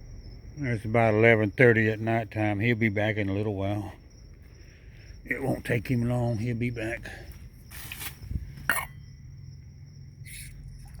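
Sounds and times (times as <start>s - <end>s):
high insect tone: 0.0s - 11.0s
brief rustle: 7.7s - 8.3s.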